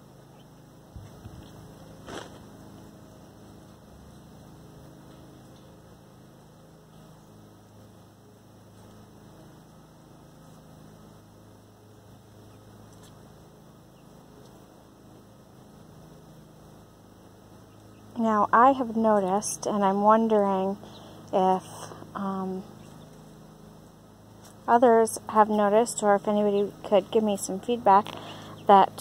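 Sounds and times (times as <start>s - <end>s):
faint low hum: 0.0s - 29.0s
scratchy rustle: 1.0s - 2.5s.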